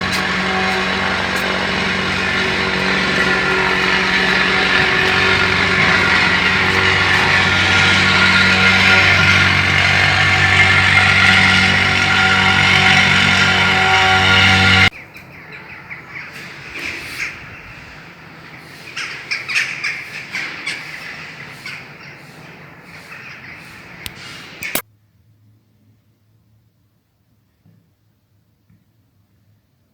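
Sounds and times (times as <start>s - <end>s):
engine running steadily: 0.0s - 14.9s
birds squawking: 0.0s - 24.8s
outdoor background noise: 0.0s - 29.9s.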